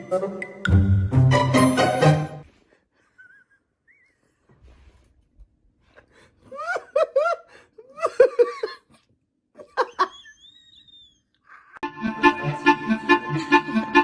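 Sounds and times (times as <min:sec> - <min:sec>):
person laughing: 0:03.0 - 0:04.3, 0:06.4 - 0:11.9, 0:12.9 - 0:14.0.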